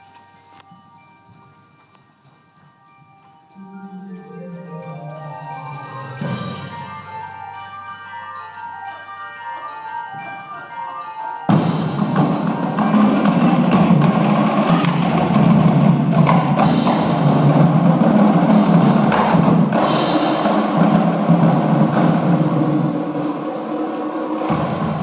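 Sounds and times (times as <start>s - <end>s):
mallet keyboard notes: 0.0s - 25.0s
drums and cymbals playing: 3.5s - 9.0s, 11.5s - 25.0s.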